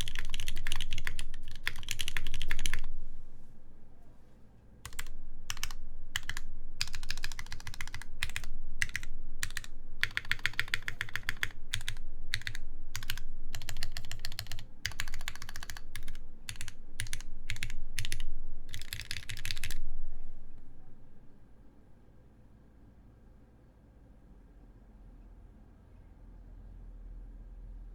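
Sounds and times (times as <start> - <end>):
mechanical keyboard typing: 0.0 - 2.9, 4.8 - 19.8.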